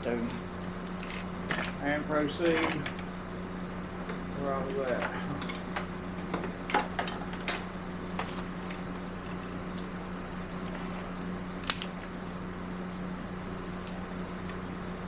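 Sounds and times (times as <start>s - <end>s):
steady low hum: 0.0s - 15.0s
light clicks and knocks of parts: 4.0s - 9.9s.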